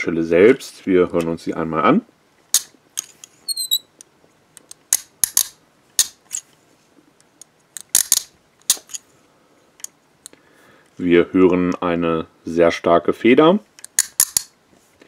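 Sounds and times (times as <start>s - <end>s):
handcuff ratchet clicking: 13.8s - 14.5s.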